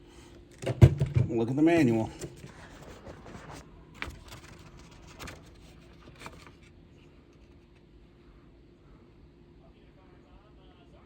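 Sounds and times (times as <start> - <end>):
paper rustling and tapping: 2.2 - 6.7.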